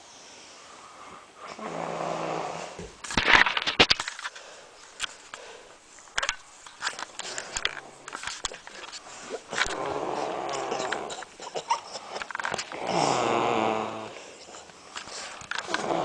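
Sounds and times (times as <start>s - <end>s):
person snoring: 1.4s - 2.8s, 9.2s - 11.9s, 12.6s - 16.0s
sharp clicks and rustling: 3.0s - 5.4s, 6.0s - 12.8s, 14.4s - 15.9s.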